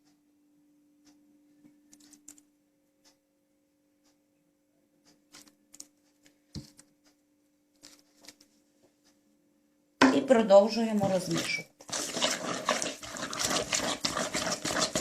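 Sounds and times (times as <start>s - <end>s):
spoon tapping mixing bowl: 11.0s - 15.0s.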